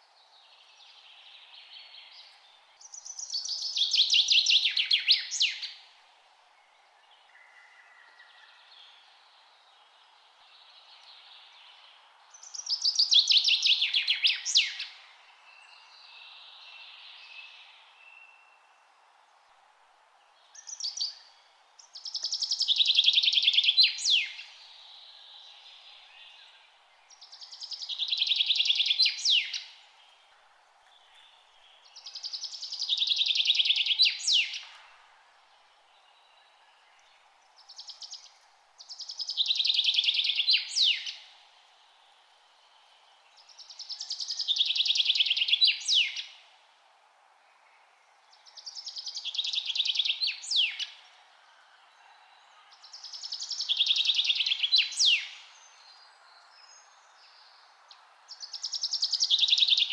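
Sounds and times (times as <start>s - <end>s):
background hiss: 0.0s - 59.9s
other birds singing faintly: 0.0s - 59.9s
songbird trilled song: 30.9s - 34.8s, 35.8s - 41.3s, 43.3s - 46.4s, 48.3s - 51.2s, 51.8s - 59.9s.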